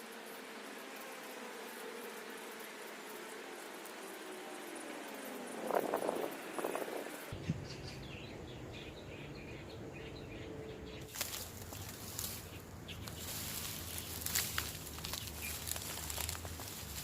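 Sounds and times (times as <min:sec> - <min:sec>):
rustling: 0:11.1 - 0:17.0.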